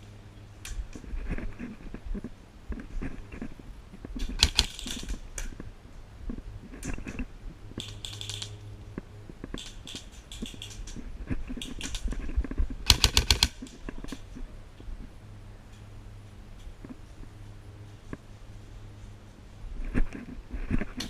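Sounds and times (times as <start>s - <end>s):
airsoft guns firing bursts: 4.4s - 5.1s, 12.9s - 13.7s.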